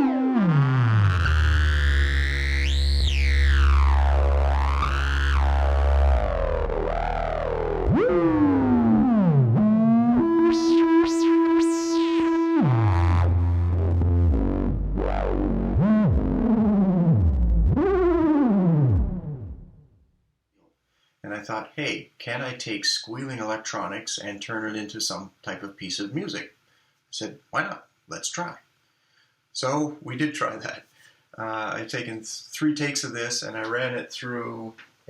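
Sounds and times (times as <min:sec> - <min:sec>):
low synthesizer drone: 0:00.0 - 0:19.9.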